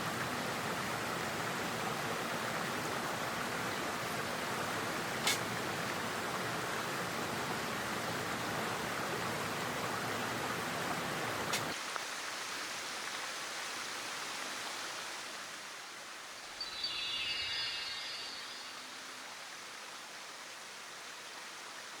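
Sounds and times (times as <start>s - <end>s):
mountain stream rushing: 0.0s - 22.0s
short high chirping call: 16.6s - 19.0s.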